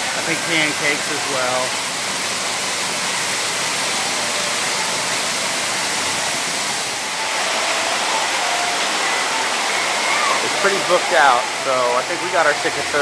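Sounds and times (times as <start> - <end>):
indoor waterfall rushing: 0.0 - 13.0
faint voices: 7.0 - 13.0.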